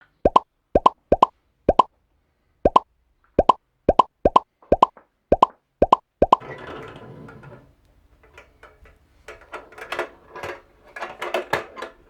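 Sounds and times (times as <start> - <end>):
bloop sound effects: 0.2 - 1.9, 3.4 - 6.4
wooden balls rolling down track: 6.2 - 12.0.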